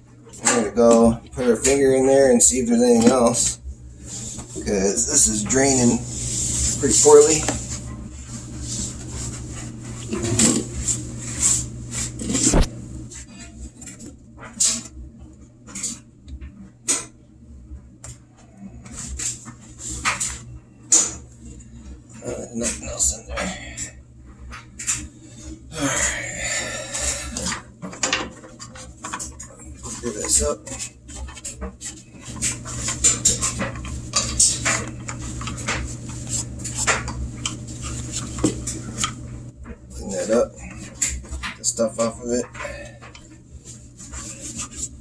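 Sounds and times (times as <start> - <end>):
low steady hum: 0.0 - 45.0
water sloshing and scraping: 0.4 - 14.0, 24.5 - 45.0.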